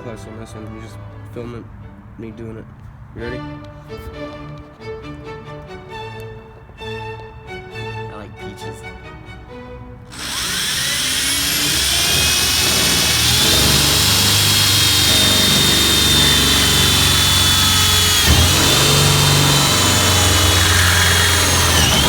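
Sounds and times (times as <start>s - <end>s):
power drill boring into steel: 10.1s - 22.0s.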